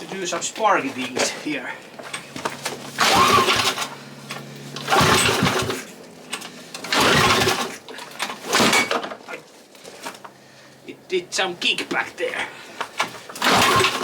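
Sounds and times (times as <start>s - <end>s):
engine pull-start cranking: 2.0s - 9.2s, 12.8s - 14.0s.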